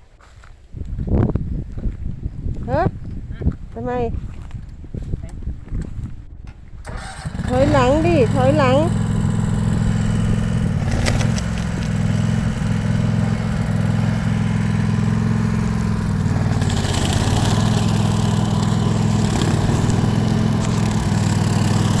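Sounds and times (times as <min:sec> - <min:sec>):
rattling noise: 0:06.9 - 0:22.0
small engine running: 0:06.9 - 0:22.0.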